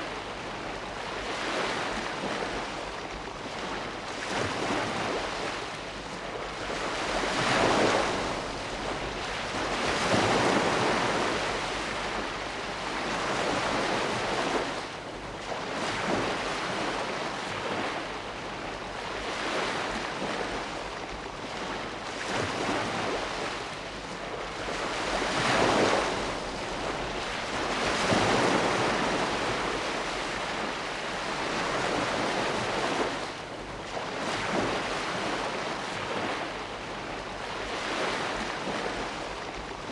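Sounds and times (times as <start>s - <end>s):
sea waves breaking: 0.0s - 39.9s.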